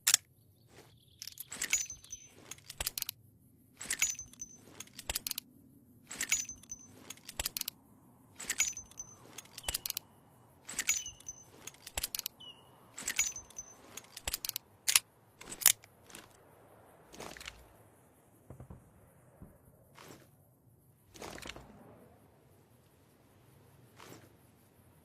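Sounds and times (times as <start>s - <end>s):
revolver action clicking: 3.8s - 5.4s, 8.4s - 10.0s, 10.7s - 16.3s.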